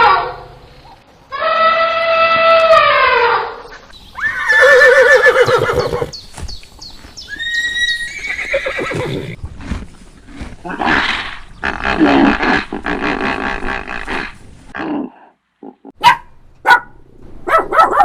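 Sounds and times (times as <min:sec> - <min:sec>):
horse whinnying: 0:04.2 - 0:06.2, 0:07.3 - 0:09.4
horse snorting: 0:08.6 - 0:15.3.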